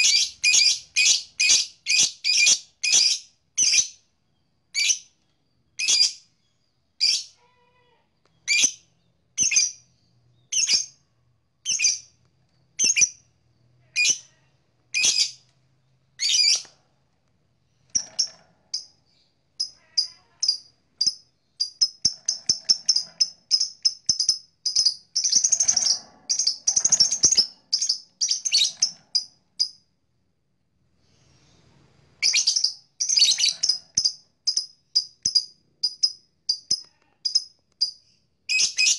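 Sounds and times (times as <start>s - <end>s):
rapid bird chirps: 0.0s - 4.0s, 17.8s - 29.8s, 32.2s - 38.9s
shrill bird calls: 0.0s - 4.0s, 16.2s - 16.7s, 19.6s - 29.8s, 32.2s - 38.9s.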